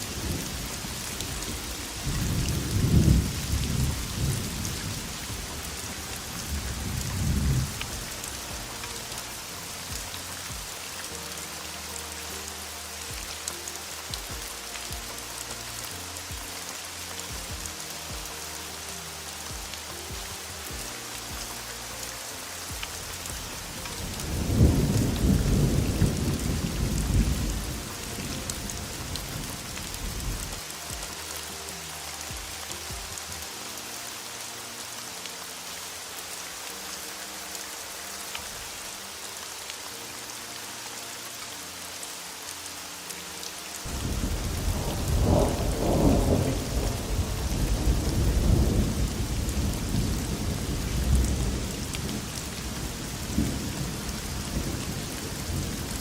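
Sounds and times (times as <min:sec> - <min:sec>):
thunder rumbling: 0:00.0 - 0:08.8, 0:23.4 - 0:30.6, 0:43.9 - 0:56.0
heavy rain hissing: 0:00.0 - 0:56.0.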